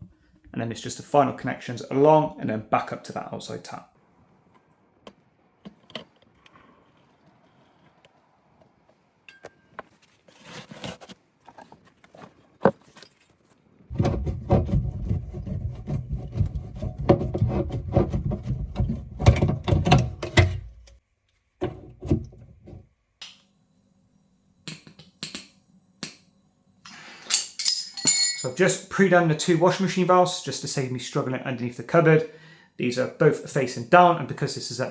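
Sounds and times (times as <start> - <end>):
hand tools scraping copper pipe: 13.9 - 19.6.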